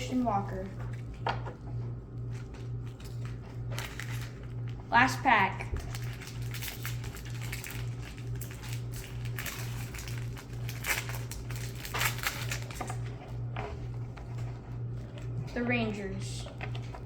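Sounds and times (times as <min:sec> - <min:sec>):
plastic wrapper tearing and crinkling: 0:02.4 - 0:04.8, 0:05.7 - 0:13.1.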